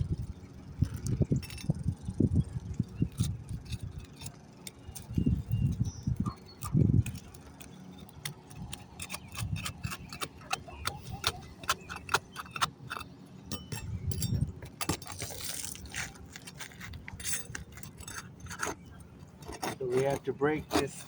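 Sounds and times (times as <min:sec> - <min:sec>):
clicks and taps on shingles: 0:06.4 - 0:21.0.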